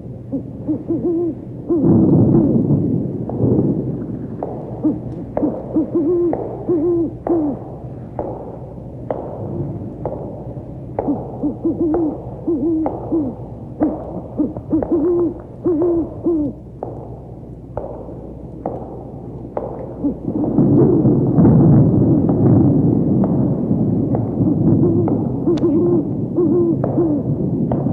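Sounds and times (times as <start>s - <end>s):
owl hooting: 0.3s - 2.7s, 4.4s - 9.3s, 10.9s - 17.1s, 18.6s - 21.4s, 24.1s - 27.4s.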